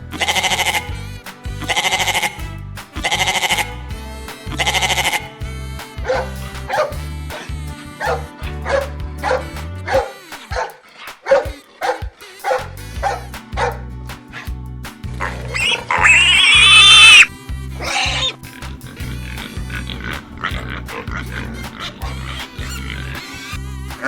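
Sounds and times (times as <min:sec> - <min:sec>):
background music: 0:00.0 - 0:24.0
high-pitched squealing call: 0:00.1 - 0:13.8, 0:15.2 - 0:24.0
dog barking: 0:06.1 - 0:07.0, 0:08.0 - 0:13.8.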